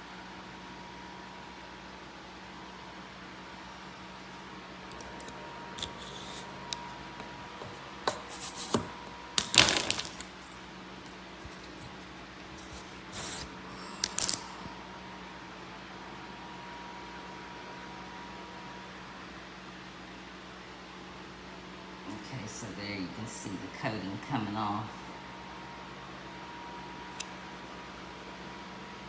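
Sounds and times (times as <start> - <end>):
steady background hum: 0.0 - 29.0
knives clicking and scraping: 4.9 - 7.0, 11.4 - 14.6.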